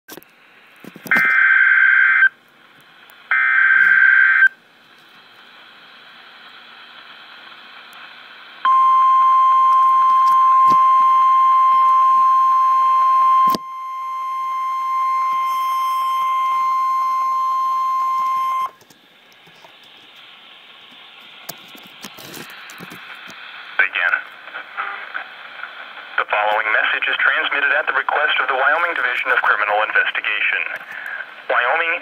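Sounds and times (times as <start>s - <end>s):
faint radio hiss: 2.2s - 8.9s, 18.7s - 32.0s.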